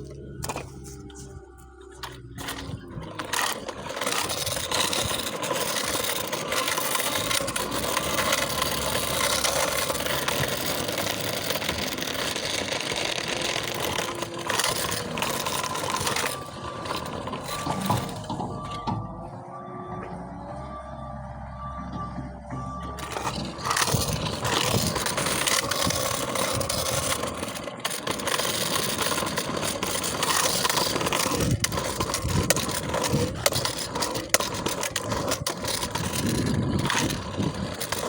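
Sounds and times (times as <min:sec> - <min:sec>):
scooter rolling noise: 0:00.0 - 0:38.0
reversing alarm beeping: 0:14.1 - 0:27.0.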